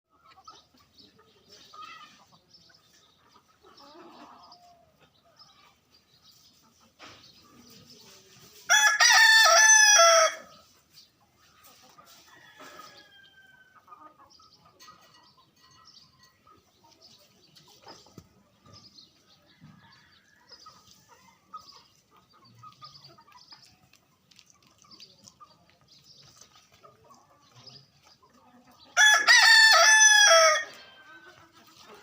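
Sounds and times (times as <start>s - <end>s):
faint bird clucks and chirps: 0.1s - 32.0s
rooster crowing: 8.7s - 10.5s, 29.0s - 30.8s.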